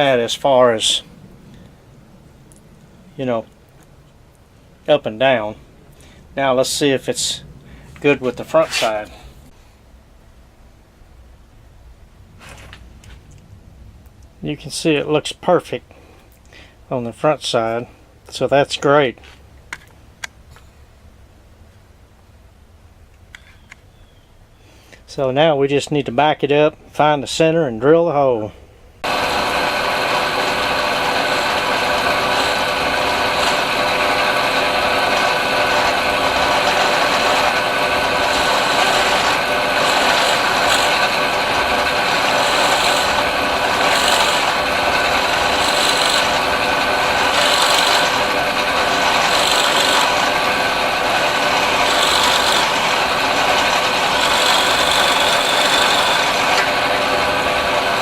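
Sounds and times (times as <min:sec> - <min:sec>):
power drill boring into wood: 0:29.0 - 0:58.0.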